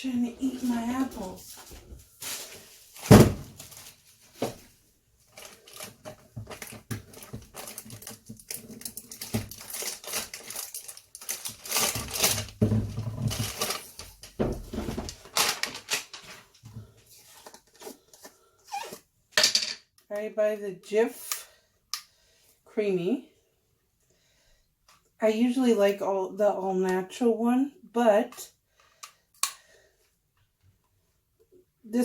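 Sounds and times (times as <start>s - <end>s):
kitchen items clattering: 5.4s - 16.6s.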